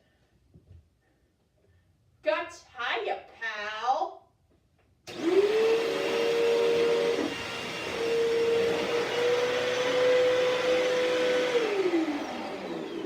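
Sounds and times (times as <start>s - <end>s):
vacuum cleaner motor whine: 5.1s - 13.0s.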